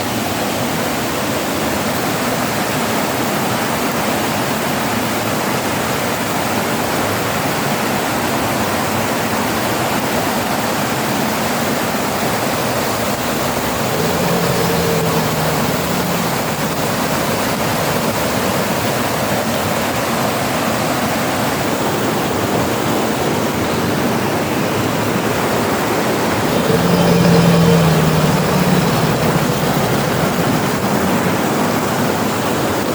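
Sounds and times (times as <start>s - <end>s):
faint low hum: 13.0s - 18.4s, 26.5s - 31.4s.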